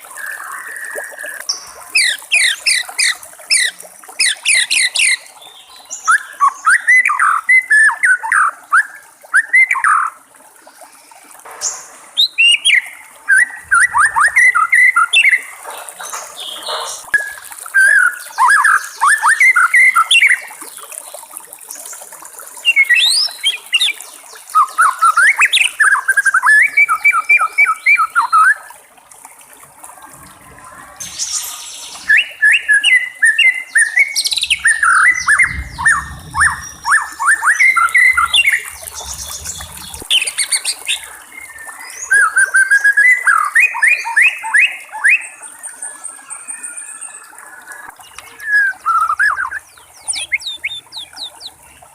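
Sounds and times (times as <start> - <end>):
bird singing whistles and chatter: 30.5 - 45.4, 48.0 - 51.5.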